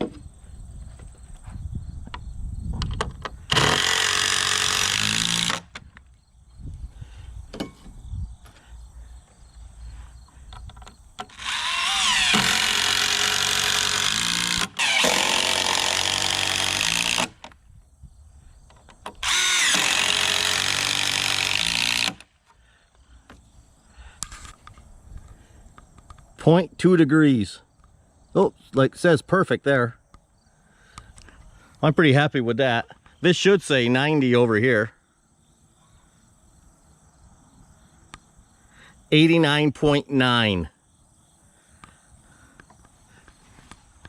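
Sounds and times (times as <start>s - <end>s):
power drill spinning: 3.4s - 5.8s, 11.2s - 17.6s, 19.2s - 22.3s.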